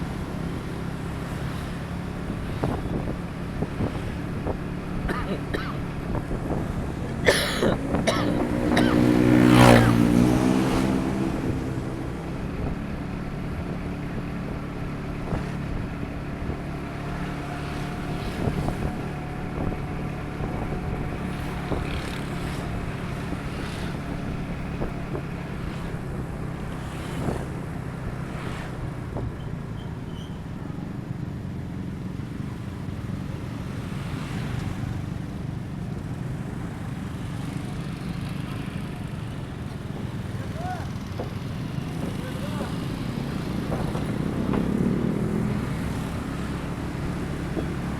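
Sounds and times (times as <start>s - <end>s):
road noise: 0.0s - 47.9s
vehicle engine droning: 0.0s - 47.9s.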